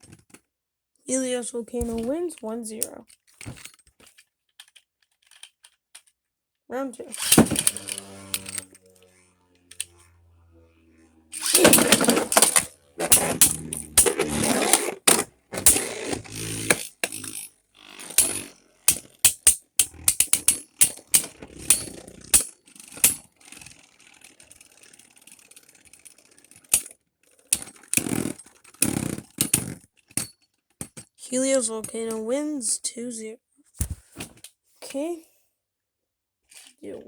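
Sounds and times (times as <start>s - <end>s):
spinning tops scraping and clashing: 7.1s - 10.2s, 11.3s - 23.7s
sharp collision clicks: 11.4s - 23.3s.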